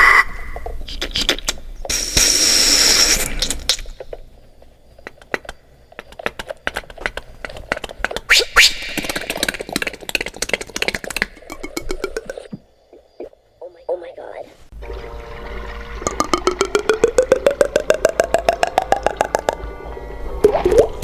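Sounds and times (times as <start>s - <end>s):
beatboxing clicks and pops: 0.8s - 4.1s, 5.0s - 12.6s, 16.3s - 19.6s
beatboxing hiss: 0.9s - 3.7s
whistle-like glide: 8.3s - 9.3s.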